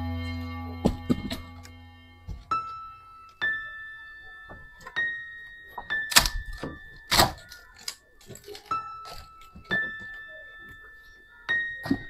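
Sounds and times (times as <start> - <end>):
ringing bell-like notes: 0.0 - 5.8
loud thumps: 0.6 - 2.6.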